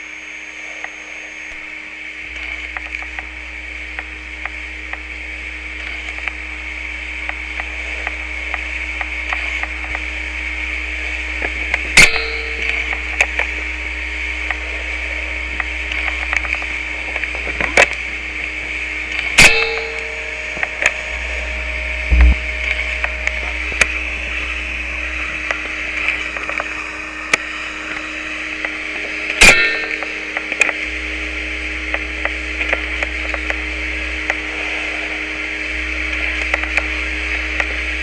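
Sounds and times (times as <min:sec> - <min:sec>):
faint low hum: 0:00.0 - 0:38.0
steady hiss: 0:00.0 - 0:38.0
sharp loud cracks: 0:19.1 - 0:21.2, 0:29.3 - 0:30.8.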